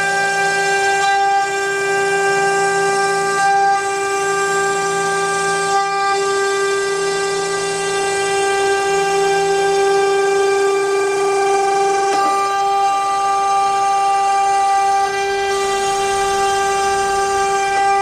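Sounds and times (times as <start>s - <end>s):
router spindle whining: 0.0s - 18.0s.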